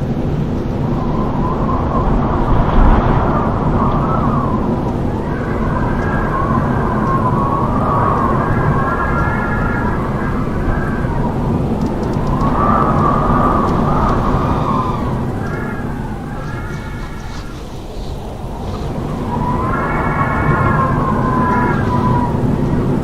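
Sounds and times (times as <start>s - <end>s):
howling wind: 0.0s - 23.0s.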